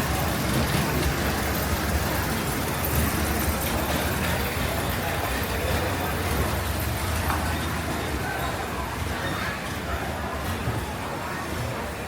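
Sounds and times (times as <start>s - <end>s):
boat engine rumbling: 0.0s - 9.2s.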